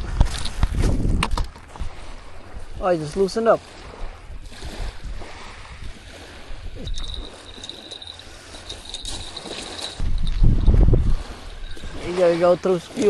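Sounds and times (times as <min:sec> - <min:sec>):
water washing on shoreline: 0:00.0 - 0:13.0
wind rumbling on microphone: 0:00.0 - 0:13.0.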